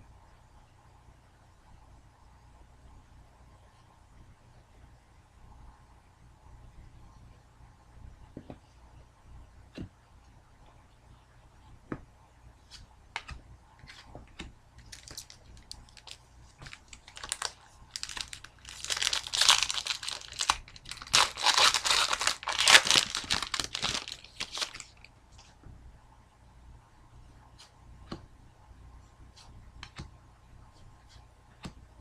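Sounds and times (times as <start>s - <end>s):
foil wrapper crinkling and tearing: 14.8s - 25.1s.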